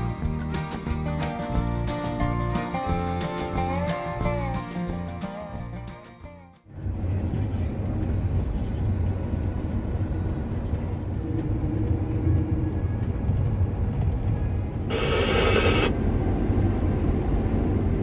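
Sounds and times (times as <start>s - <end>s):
heavy vehicle engine rumbling: 14.2s - 18.0s
loud rasping noise: 14.9s - 15.9s.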